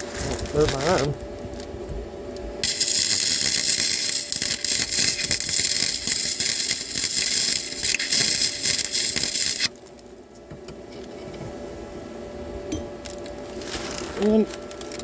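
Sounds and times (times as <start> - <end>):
welding arc crackling: 0.0 - 1.7, 2.3 - 10.2, 13.1 - 15.0
faint welder hum: 0.0 - 15.0.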